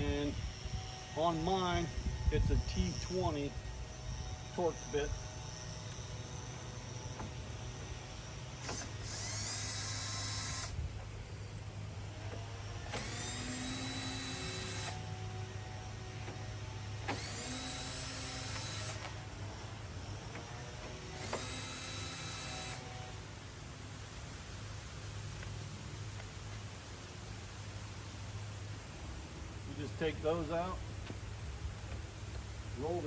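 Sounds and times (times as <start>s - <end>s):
power drill spinning: 2.3s - 10.9s, 12.0s - 23.2s.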